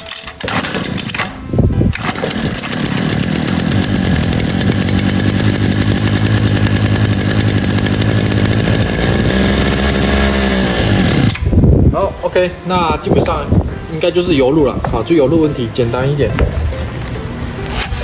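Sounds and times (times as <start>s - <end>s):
hedge trimmer engine running: 0.4s - 11.7s.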